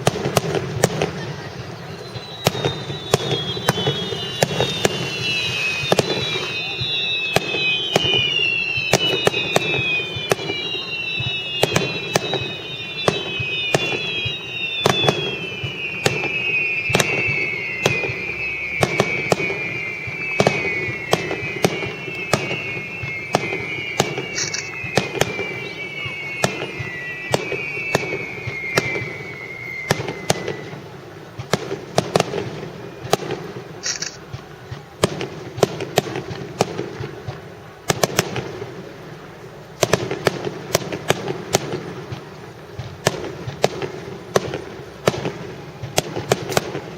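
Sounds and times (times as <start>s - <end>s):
firework whistles falling in pitch: 0.0s - 46.9s
firework shells bursting: 2.0s - 38.6s.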